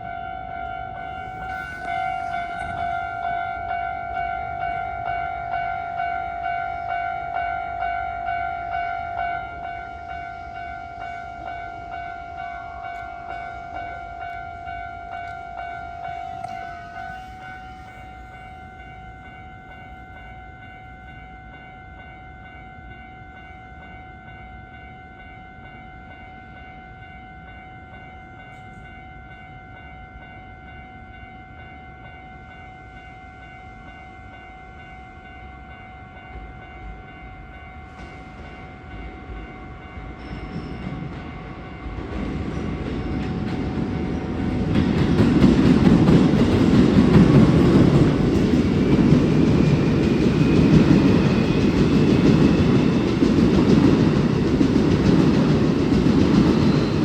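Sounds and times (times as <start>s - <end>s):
electric train rumble: 0.0s - 57.0s
level crossing bells ringing: 0.7s - 23.5s.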